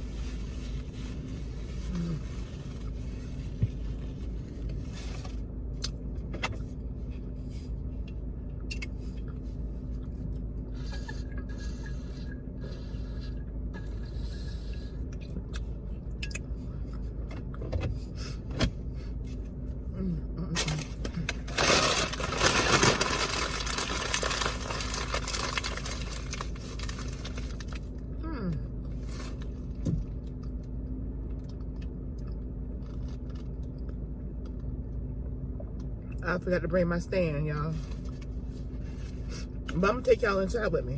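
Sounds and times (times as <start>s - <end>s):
steady low hum: 0.0s - 40.9s
loud rustle: 20.8s - 27.8s.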